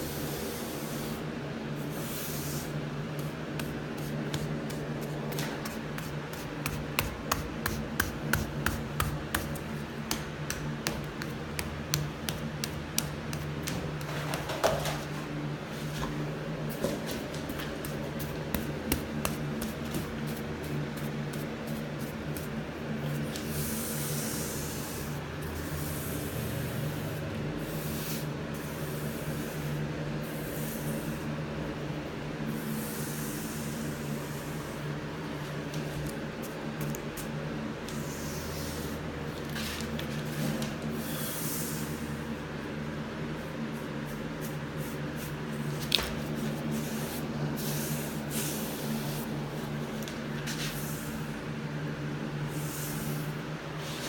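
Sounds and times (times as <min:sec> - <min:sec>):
steady low hum: 0:00.0 - 0:54.0
hissing brush strokes: 0:01.8 - 0:04.8.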